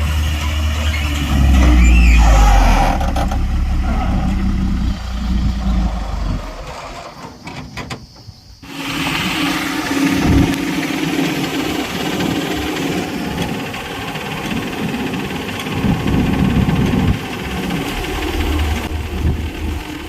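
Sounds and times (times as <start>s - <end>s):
heavy diesel engine working: 0.0s - 7.2s, 8.6s - 20.0s.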